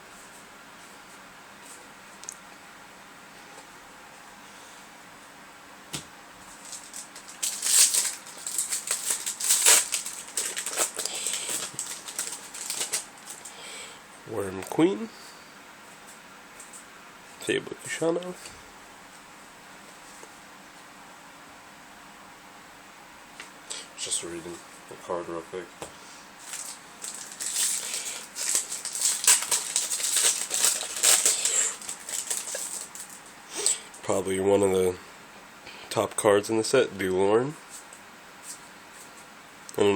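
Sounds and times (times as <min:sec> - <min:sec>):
trading cards being handled: 0:05.9 - 0:13.5, 0:26.4 - 0:33.8
foil wrapper crinkling: 0:06.5 - 0:13.6, 0:26.4 - 0:34.0.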